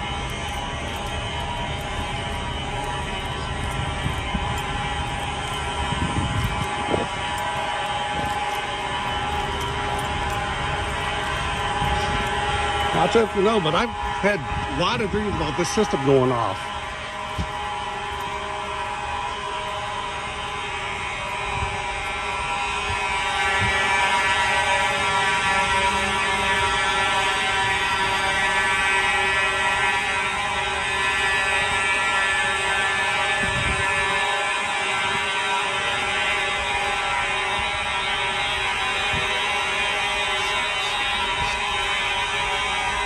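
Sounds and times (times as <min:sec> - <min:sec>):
fire alarm horns buzzing: 0:00.0 - 0:43.0.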